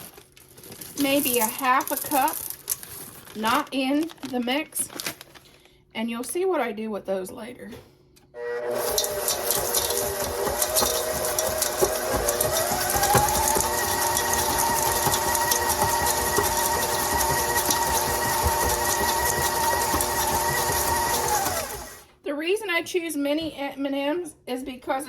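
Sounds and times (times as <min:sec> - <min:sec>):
electric mixer motor whine: 0:08.4 - 0:22.1.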